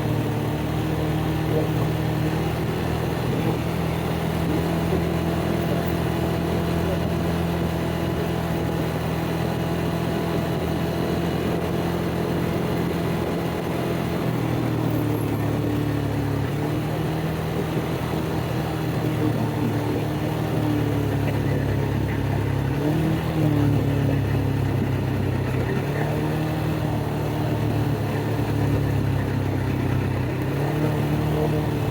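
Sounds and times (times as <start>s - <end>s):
atv engine running: 0.0s - 31.9s.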